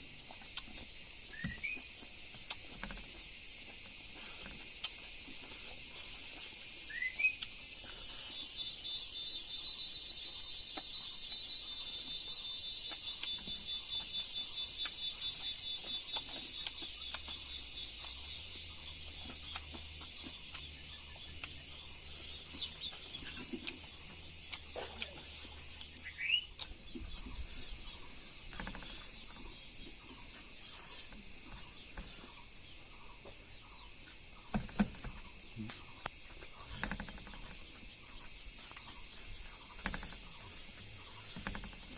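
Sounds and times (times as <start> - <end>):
insects trilling: 0.0 - 41.9
bird chirp: 0.3 - 41.9.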